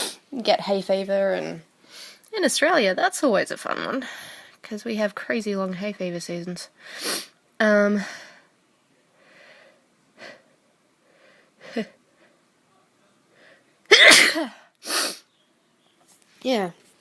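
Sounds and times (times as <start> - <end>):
faint catching breaths: 4.0 - 4.6, 6.8 - 12.5, 13.2 - 13.8
woman sneezing: 13.9 - 15.2.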